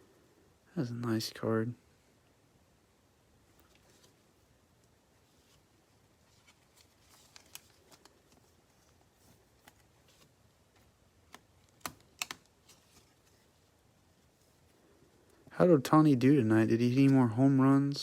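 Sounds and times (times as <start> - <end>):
trading cards clicking: 11.2 - 12.5.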